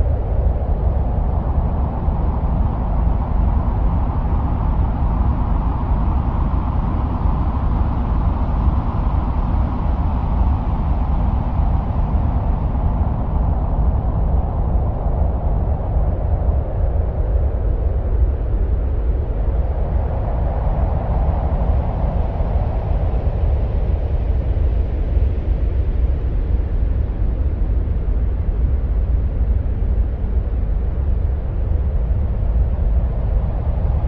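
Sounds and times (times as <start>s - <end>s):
deep wind-like noise: 0.0s - 34.0s.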